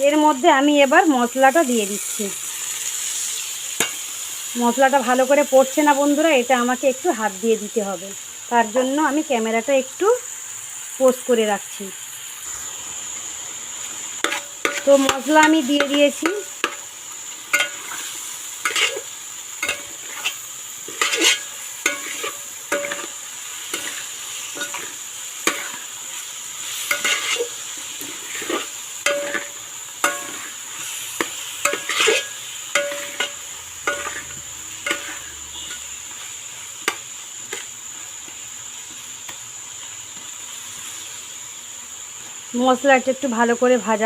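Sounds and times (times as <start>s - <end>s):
vegetables sizzling in oil: 0.0s - 44.0s
metal spatula scraping a pan: 14.2s - 38.1s.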